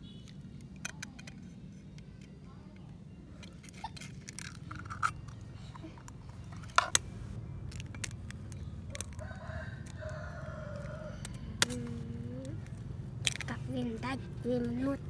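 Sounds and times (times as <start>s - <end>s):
sharp cracks and clicks: 6.7s - 13.6s
rooster crowing: 9.0s - 11.6s.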